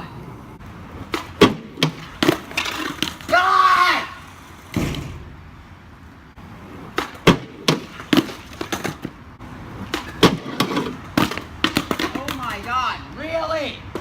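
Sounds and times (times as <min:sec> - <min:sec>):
skateboard wheels rolling rumble: 0:00.0 - 0:12.7
skateboard clacking on ground: 0:01.0 - 0:03.4, 0:06.8 - 0:12.8.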